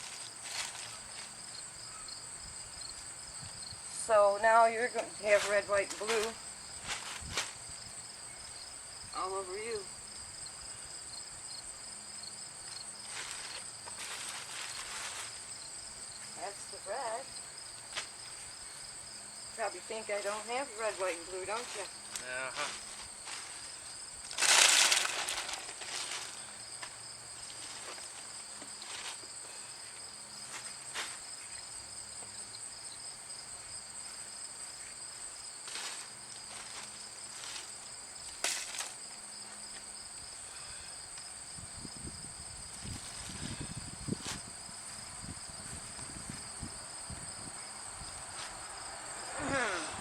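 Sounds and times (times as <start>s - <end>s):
insects trilling: 0.0s - 50.0s.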